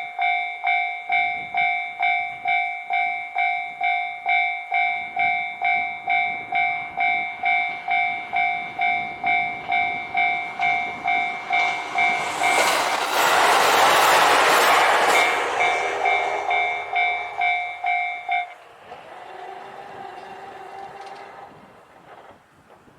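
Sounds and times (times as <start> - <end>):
level-crossing warning bell ringing: 0.0 - 13.0, 15.1 - 21.4
railcar running noise: 0.0 - 22.9
train wheel clicks: 5.2 - 22.9.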